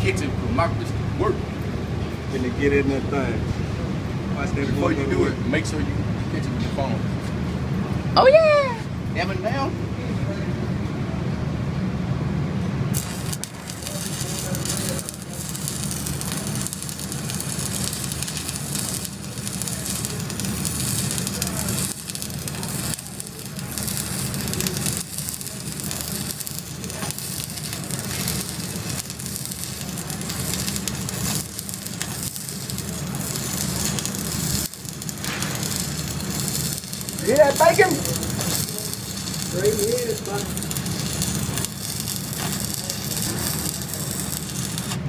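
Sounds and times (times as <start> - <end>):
welding arc crackling: 12.9 - 45.0.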